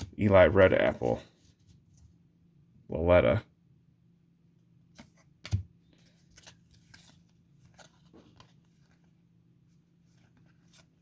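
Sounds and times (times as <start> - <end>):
trading cards being flipped: 5.0 - 9.1, 10.1 - 11.0.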